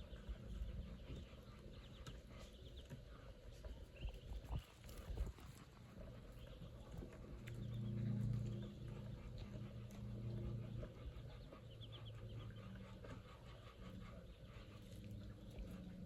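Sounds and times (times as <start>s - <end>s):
ducklings peeping: 0.0s - 16.0s
steady low hum: 0.0s - 16.0s.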